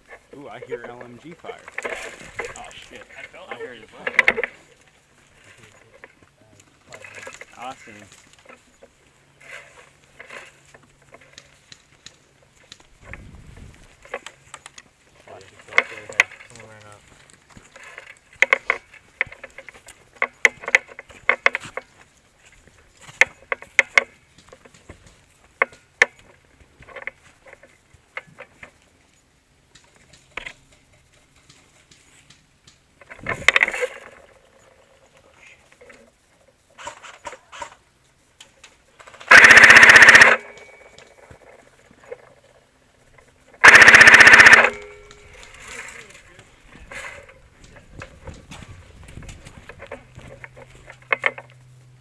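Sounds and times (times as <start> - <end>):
rapid automatic airsoft fire: 39.3 - 40.6, 43.6 - 45.0.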